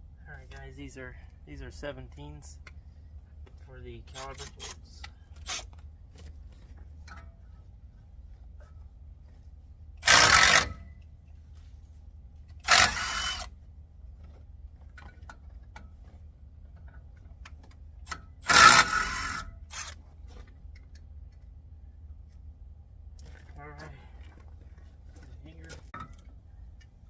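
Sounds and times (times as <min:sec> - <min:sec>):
power wrench bursts: 0:05.4 - 0:05.7, 0:10.0 - 0:10.8, 0:12.6 - 0:13.5, 0:18.1 - 0:20.0.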